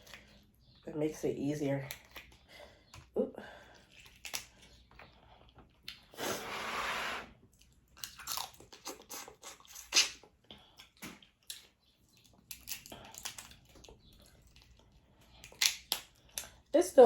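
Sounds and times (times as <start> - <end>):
chewing: 1.9 - 6.2, 7.4 - 16.7
shells cracking: 15.3 - 16.6.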